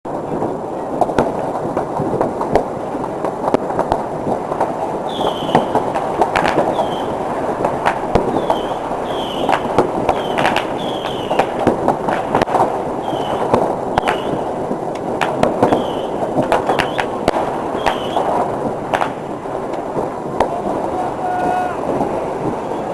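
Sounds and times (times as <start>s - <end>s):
crowd clapping: 7.8s - 12.3s
short falling whistles: 8.4s - 9.5s.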